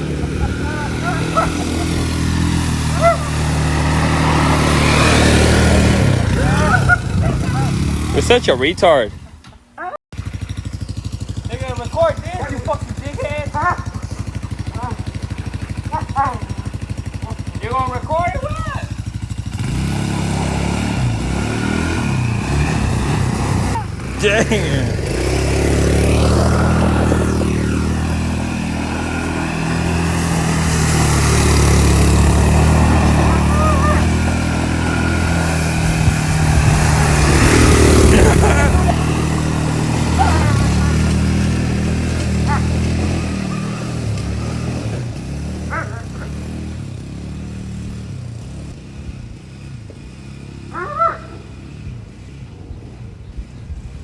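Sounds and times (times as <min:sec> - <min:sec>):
atv engine running: 0:00.0 - 0:54.0
dog barking: 0:00.9 - 0:01.8, 0:02.9 - 0:03.4, 0:09.8 - 0:10.0, 0:13.5 - 0:16.7, 0:33.2 - 0:34.2, 0:40.2 - 0:41.0, 0:42.4 - 0:42.8, 0:45.7 - 0:46.4, 0:50.7 - 0:51.4.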